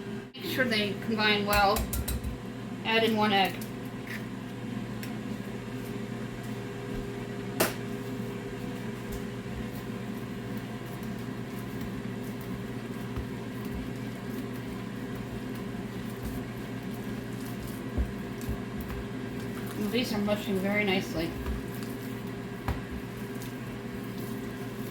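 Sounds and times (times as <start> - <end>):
steady appliance hum: 0.0 - 24.9
hands mashing wet mixture: 8.0 - 24.9.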